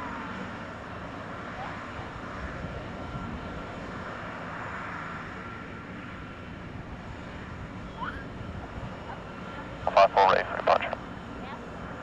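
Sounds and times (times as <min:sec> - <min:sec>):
aircraft engines rumbling: 0:00.0 - 0:12.0
faint high whine: 0:09.9 - 0:11.0.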